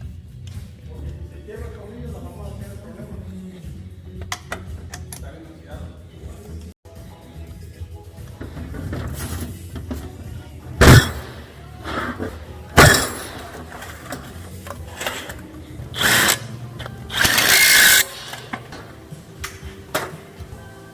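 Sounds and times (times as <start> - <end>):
loud sharp bangs: 10.8 - 11.4, 12.8 - 13.5.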